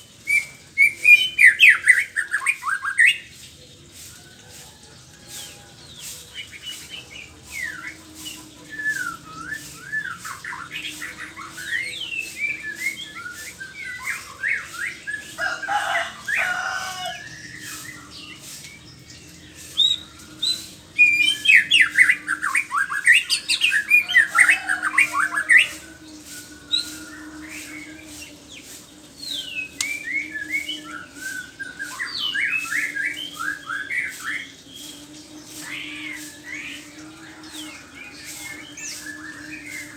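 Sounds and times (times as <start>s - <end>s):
bird singing whistled phrases: 0.3s - 3.3s, 7.6s - 15.3s, 19.8s - 25.8s, 29.3s - 34.5s.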